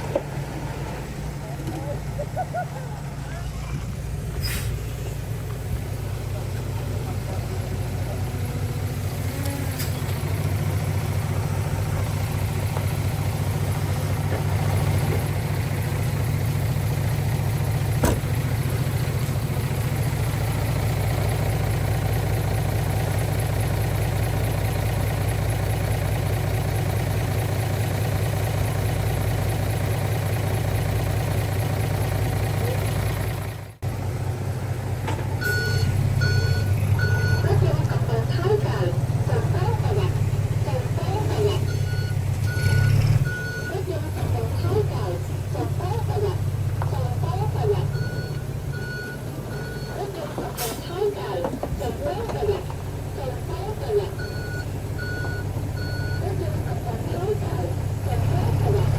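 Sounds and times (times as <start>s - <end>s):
diesel machinery engine drone: 0.0s - 58.9s
reversing alarm beeping: 35.4s - 43.9s, 47.6s - 50.8s, 53.4s - 57.4s.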